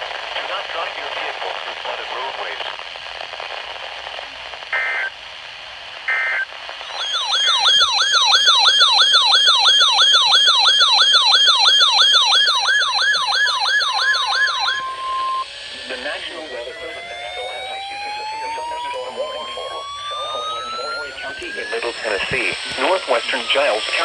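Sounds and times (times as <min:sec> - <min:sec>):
electronic siren alarm yelping: 0:06.1 - 0:22.2
steady attention tone: 0:06.1 - 0:24.0
warbling data bursts: 0:06.1 - 0:24.0.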